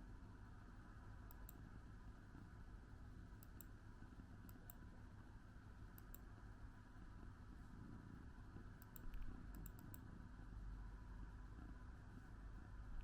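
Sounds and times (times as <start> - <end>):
low room hum: 0.0 - 13.0.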